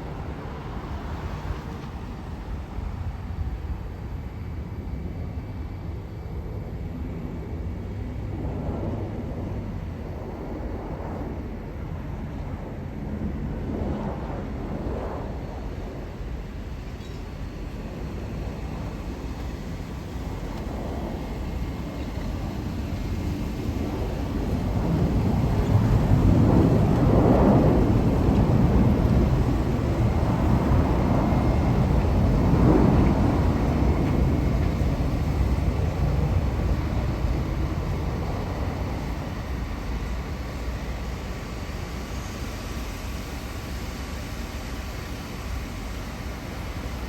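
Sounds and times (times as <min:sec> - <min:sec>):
jet engines rumbling: 0:00.0 - 0:47.0.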